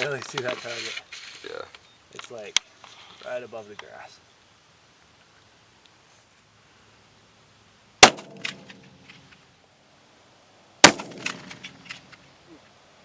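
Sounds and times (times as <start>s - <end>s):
rifle shots echoing: 8.0s - 8.9s, 10.8s - 12.0s.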